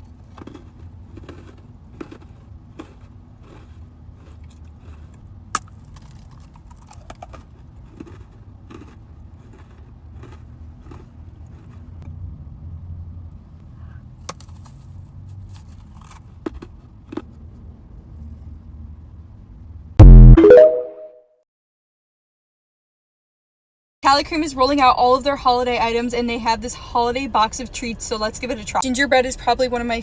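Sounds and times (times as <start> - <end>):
faint chewing: 0.0 - 12.1, 13.3 - 17.3.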